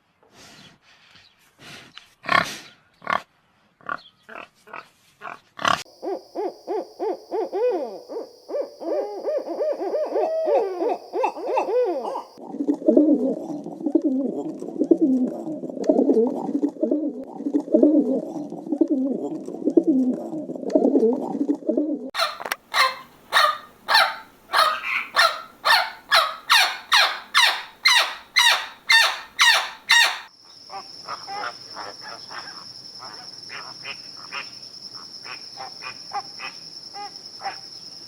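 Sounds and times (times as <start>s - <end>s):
pigeons cooing: 5.9s - 12.4s, 22.2s - 30.3s
loud repeated animal call: 22.2s - 30.3s.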